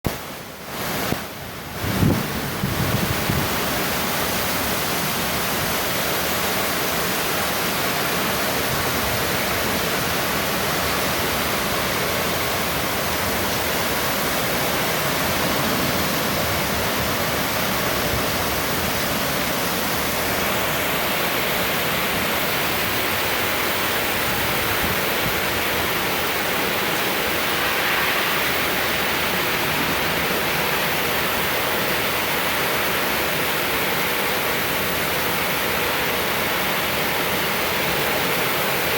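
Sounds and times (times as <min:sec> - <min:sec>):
heavy rain pouring: 0:00.1 - 0:38.9.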